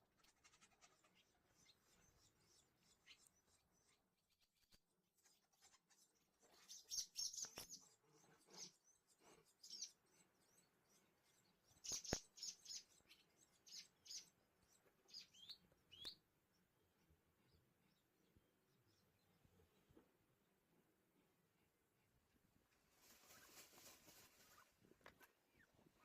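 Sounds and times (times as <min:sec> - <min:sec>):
swallows chirping: 0:00.1 - 0:19.4.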